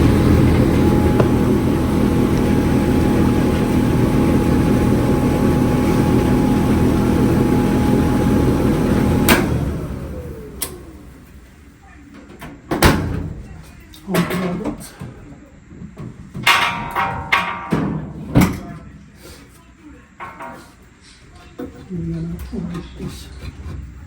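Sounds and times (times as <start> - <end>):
motor spinning down: 0.0 - 11.4
clothes dryer running: 0.0 - 24.0.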